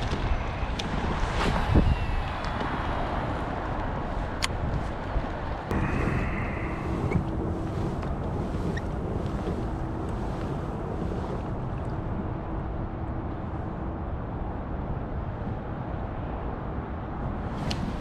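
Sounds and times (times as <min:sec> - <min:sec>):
highway road noise: 0:00.0 - 0:18.0
wind on microphone: 0:00.0 - 0:18.0
faint steady hum: 0:05.7 - 0:18.0.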